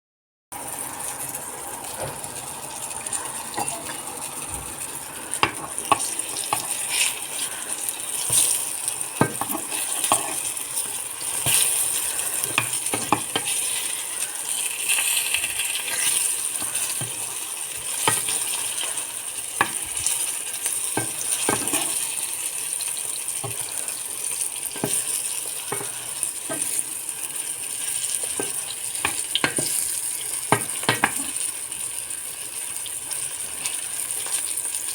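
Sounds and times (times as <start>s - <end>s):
eggplant slices sizzling in oil: 0.6s - 34.9s
utensil tapping against pan: 5.4s - 6.8s, 9.2s - 10.4s, 12.5s - 13.5s, 19.6s - 19.9s, 28.3s - 29.8s, 30.5s - 31.4s.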